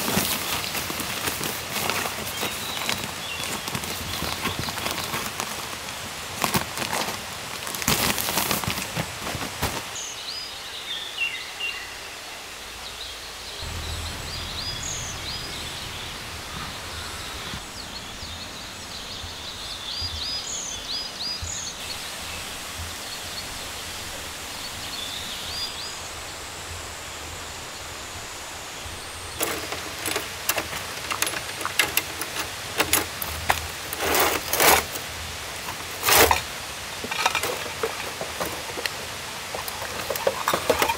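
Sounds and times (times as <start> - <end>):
camp gear clicks and knocks: 0.0 - 10.0, 29.4 - 40.9
steady outdoor hiss: 0.0 - 40.9
high bird chirps: 13.6 - 18.3.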